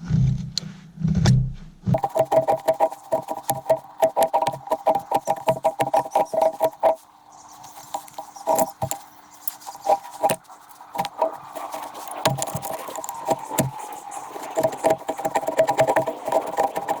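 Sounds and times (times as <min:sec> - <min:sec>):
rhythmic background music: 0:02.0 - 0:07.0.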